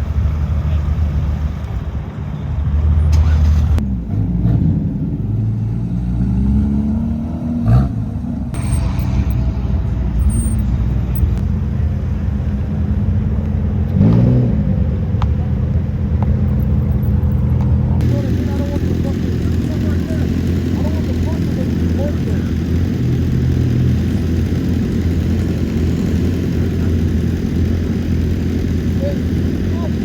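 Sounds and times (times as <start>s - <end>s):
low exhaust rumble: 0.0s - 2.1s, 7.0s - 30.0s
car engines revving: 0.0s - 30.0s.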